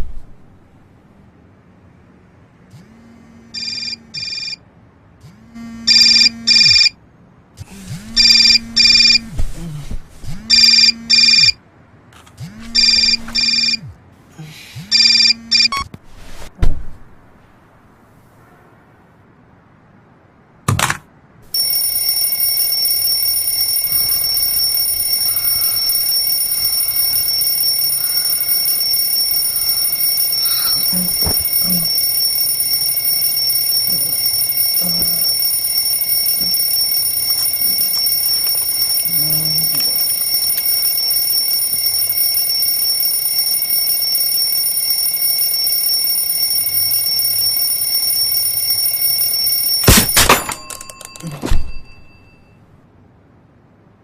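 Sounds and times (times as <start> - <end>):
alarm clock ringing: 3.6 - 4.6, 5.9 - 6.9, 21.5 - 52.6.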